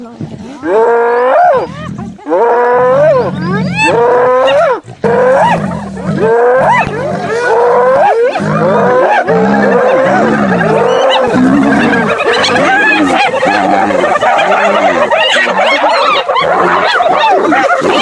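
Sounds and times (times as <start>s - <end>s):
low continuous growl: 0.0s - 18.0s
hyenas yelping: 0.7s - 18.0s.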